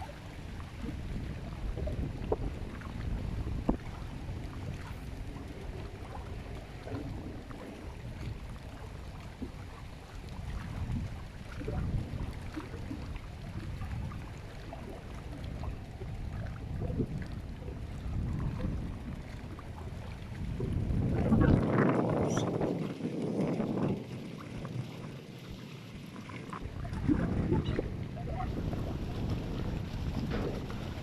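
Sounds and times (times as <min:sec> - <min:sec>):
wind buffeting microphone: 0:00.0 - 0:31.0.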